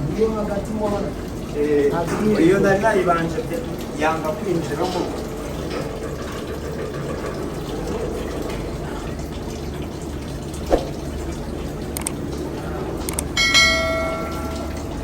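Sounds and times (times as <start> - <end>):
water rushing in a drain: 0.0 - 15.0
sharp knock: 10.7 - 11.0.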